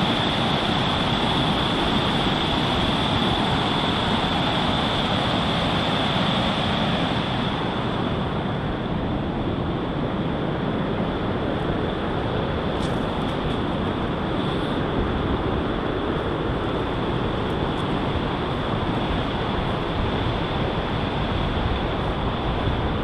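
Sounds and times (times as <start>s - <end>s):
waterfall rushing: 0.0s - 9.0s.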